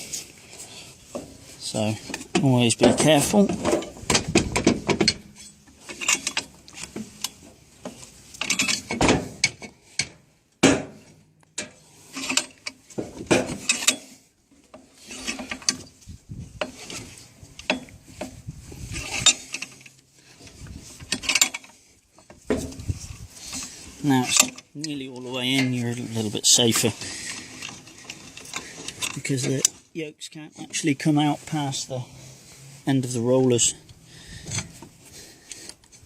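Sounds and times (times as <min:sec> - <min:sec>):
vise screw clicking and grinding: 0:13.6 - 0:14.1, 0:18.9 - 0:21.8.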